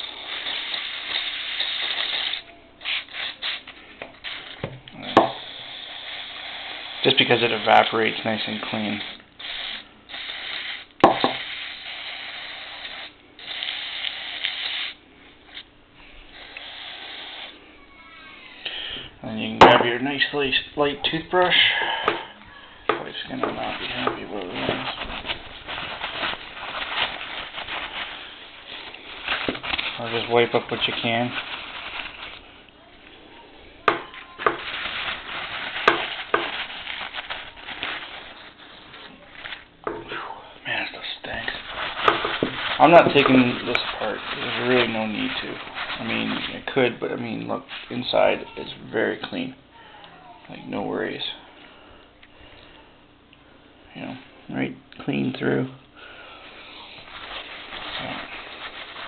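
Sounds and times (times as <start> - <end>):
aerosol spray hissing: 0.0 - 15.6, 16.3 - 17.6, 33.9 - 36.8, 41.2 - 46.6
hissing and scrubbing: 8.7 - 15.6, 16.3 - 17.6, 23.0 - 32.6, 33.8 - 40.1, 40.8 - 47.0.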